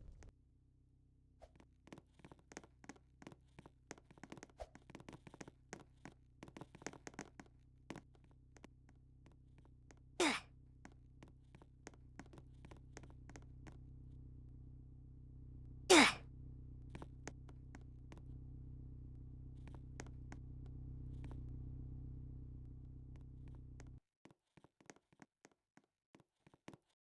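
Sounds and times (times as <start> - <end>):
steady low hum: 8.8 - 24.0.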